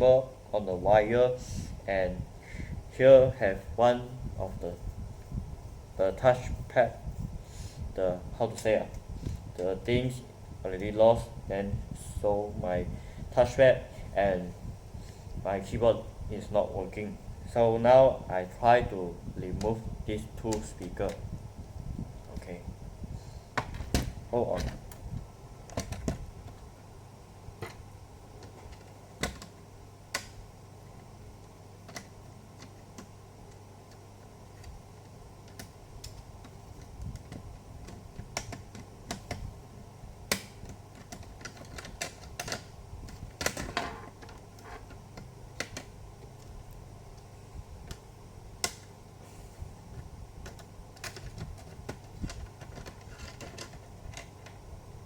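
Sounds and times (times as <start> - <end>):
faint low hum: 0.0 - 55.0
plastic laptop parts clicking: 31.8 - 34.0, 35.4 - 39.4, 40.3 - 45.9, 50.4 - 54.6.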